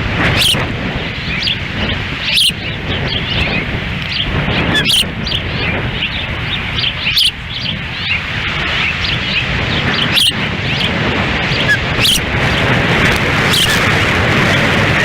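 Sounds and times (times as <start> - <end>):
wind buffeting microphone: 0.0 - 15.0
ospreys chirping: 0.2 - 15.0.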